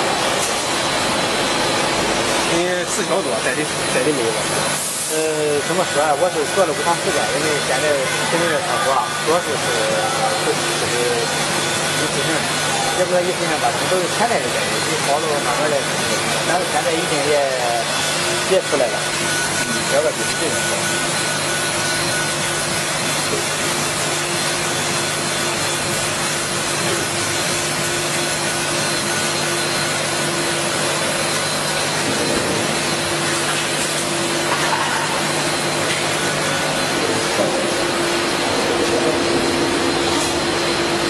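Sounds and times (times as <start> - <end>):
laser engraver humming: 0.0 - 41.0.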